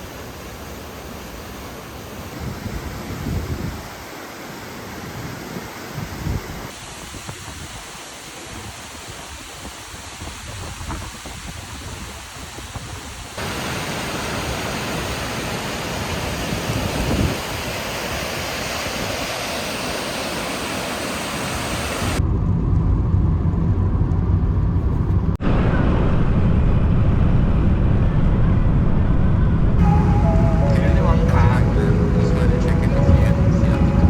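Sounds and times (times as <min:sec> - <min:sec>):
falling water rushing: 0:00.0 - 0:22.2, 0:29.8 - 0:34.0
deep low rumble: 0:22.2 - 0:34.0.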